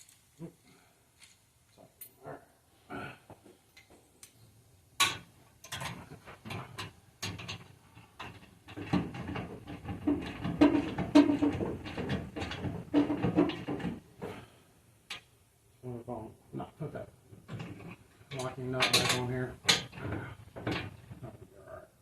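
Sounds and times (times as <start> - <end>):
rapid rattling and clicking: 5.0 - 14.1, 17.4 - 21.3.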